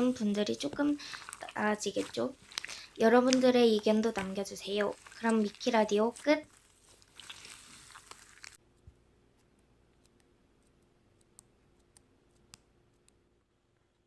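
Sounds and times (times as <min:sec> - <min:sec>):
slime squishing: 0:00.0 - 0:08.6.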